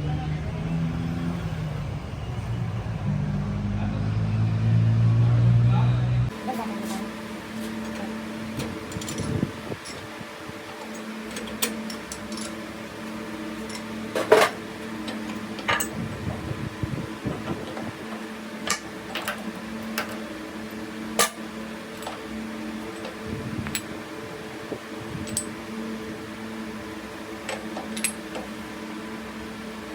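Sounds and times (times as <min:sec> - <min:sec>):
metal lathe humming: 0:06.3 - 0:29.9.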